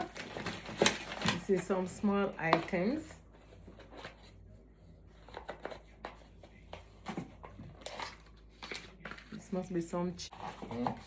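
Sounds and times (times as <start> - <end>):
packaging rustling: 0.0 - 4.4
low room hum: 0.1 - 11.0.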